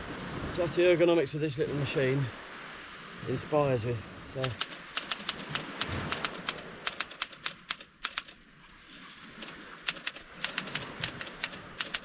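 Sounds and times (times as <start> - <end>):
manual typewriter key clacks: 4.4 - 8.3, 9.9 - 12.0.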